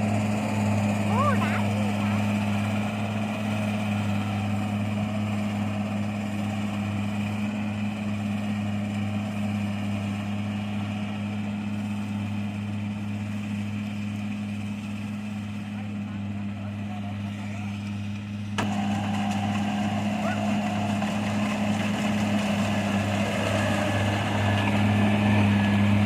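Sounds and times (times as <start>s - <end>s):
combine harvester engine running: 0.0s - 26.0s
machinery noise: 0.0s - 26.0s.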